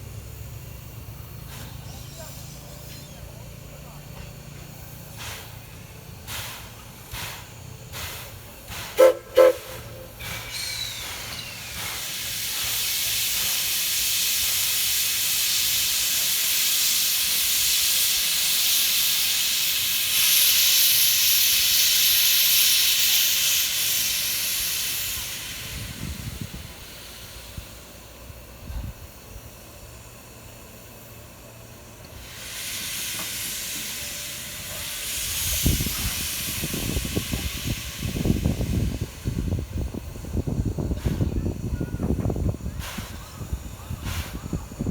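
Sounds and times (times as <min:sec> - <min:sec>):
steam hissing: 0:00.0 - 0:44.9
steam whistle toots: 0:08.7 - 0:11.9.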